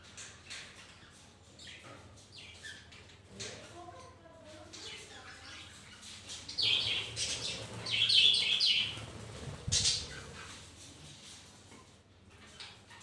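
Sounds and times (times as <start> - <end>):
parakeets chirping: 0.1 - 3.8, 4.7 - 10.7.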